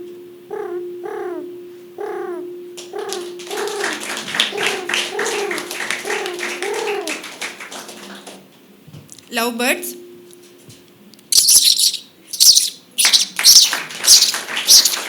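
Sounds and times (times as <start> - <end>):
woman imitating pigeon coos: 0.5 - 8.1
clapping: 2.8 - 8.5, 13.0 - 15.0.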